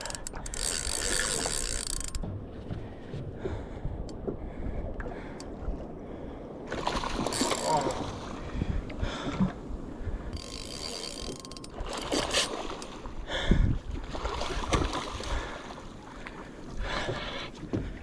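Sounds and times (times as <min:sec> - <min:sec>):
fishing reel whirring and clicking: 0:00.0 - 0:02.2, 0:07.3 - 0:08.0, 0:10.3 - 0:12.9.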